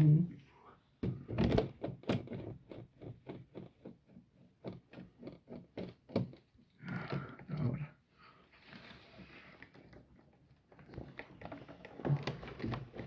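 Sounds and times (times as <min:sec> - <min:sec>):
small clicks and knocks: 0:01.0 - 0:07.7, 0:09.6 - 0:13.0
rustling and scraping: 0:08.5 - 0:13.0.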